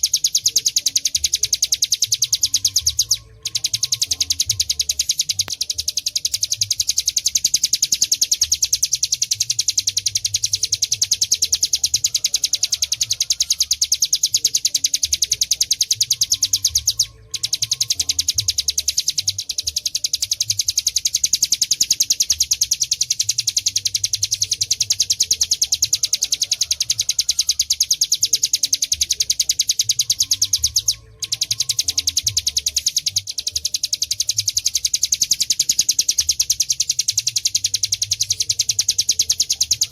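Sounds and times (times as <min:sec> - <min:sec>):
bird singing rapid trill: 0:00.0 - 0:39.9.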